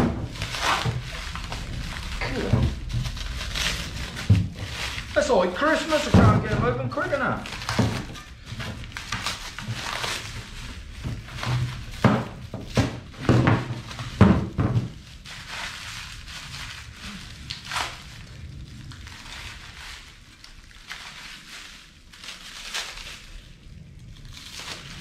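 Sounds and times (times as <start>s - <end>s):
knocks and thuds of parts: 0.0s - 1.0s, 4.1s - 10.1s, 11.0s - 15.0s
packaging rustling and crinkling: 0.0s - 25.0s.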